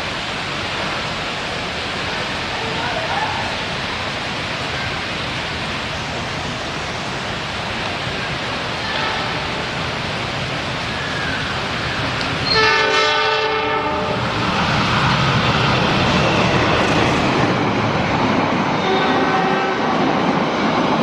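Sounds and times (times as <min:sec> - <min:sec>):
heavy rain hissing: 0:00.0 - 0:18.3
low train rumble: 0:00.0 - 0:21.0
train horn blast: 0:08.8 - 0:09.6, 0:12.4 - 0:14.2, 0:18.8 - 0:20.0.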